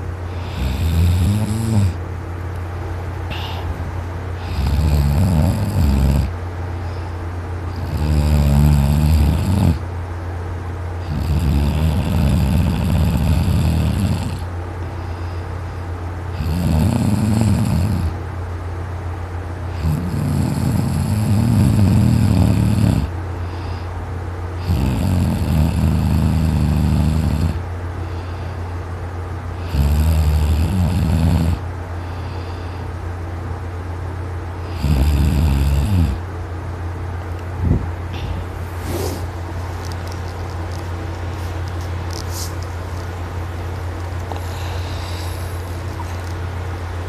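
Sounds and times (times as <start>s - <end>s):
steady low hum: 0.0s - 47.0s
man snoring loudly: 0.3s - 2.0s, 4.4s - 6.4s, 7.7s - 9.8s, 11.0s - 14.5s, 16.3s - 18.2s, 19.7s - 23.1s, 24.6s - 27.6s, 29.6s - 31.6s, 34.6s - 36.2s.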